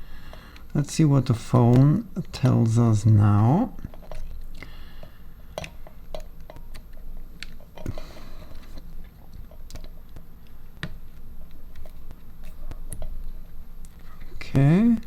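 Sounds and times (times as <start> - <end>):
low steady hum: 0.0 - 15.0
tools tapping phone parts: 0.3 - 4.3.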